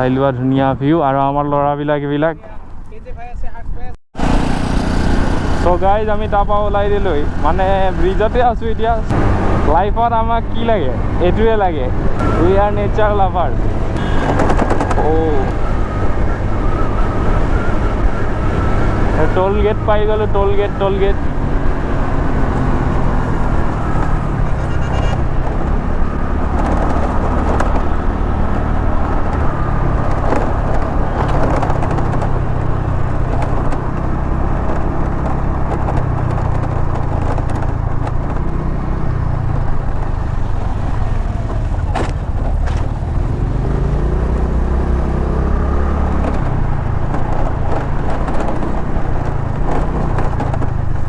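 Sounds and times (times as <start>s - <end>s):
wind and road noise: 0.0s - 51.0s
motorcycle engine running: 4.2s - 9.9s, 13.6s - 16.0s, 20.6s - 51.0s.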